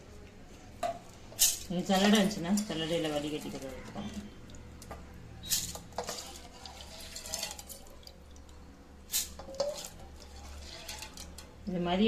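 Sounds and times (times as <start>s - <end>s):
utensils and dishes clinking: 0.8s - 8.3s, 9.1s - 11.6s
dishes clattering: 9.4s - 11.6s.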